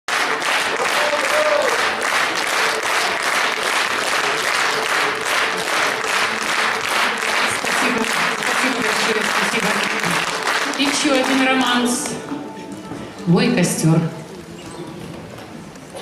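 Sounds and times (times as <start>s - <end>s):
audience applauding: 0.1s - 12.2s.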